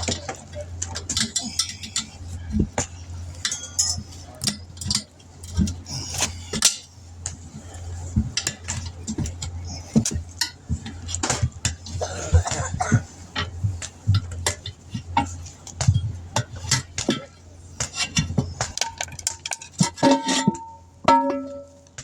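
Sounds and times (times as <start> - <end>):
low hum: 0.0 - 22.0
metal tools scraping wheel rim: 17.9 - 21.8
ringing metal strikes: 19.9 - 21.9.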